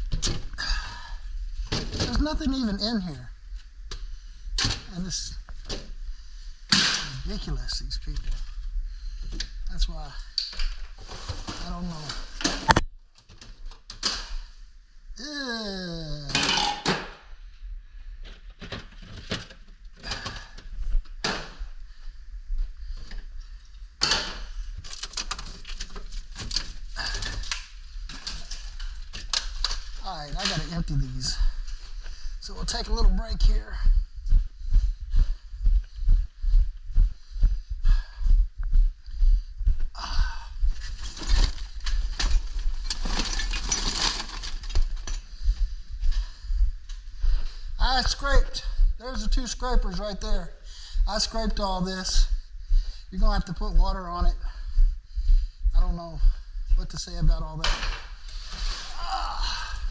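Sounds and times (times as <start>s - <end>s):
knocks scrapes and rustles: 40.8s - 45.2s.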